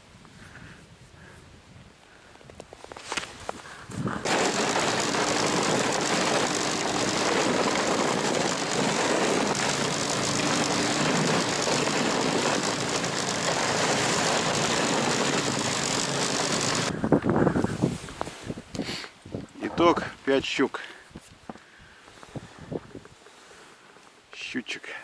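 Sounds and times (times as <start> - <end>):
vehicle engine running: 4.2 - 17.0.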